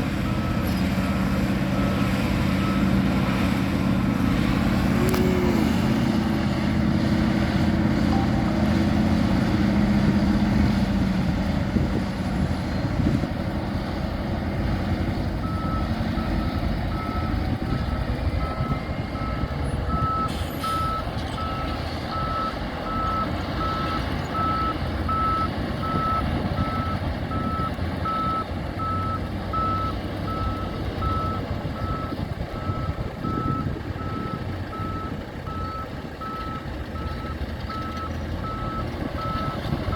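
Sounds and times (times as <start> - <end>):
diesel engine running loudly: 0.0 - 39.9
reversing alarm beeping: 18.0 - 39.6.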